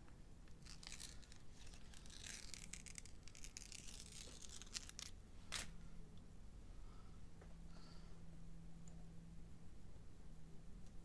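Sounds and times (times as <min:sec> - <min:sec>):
tape rustling and peeling: 0:00.4 - 0:05.8.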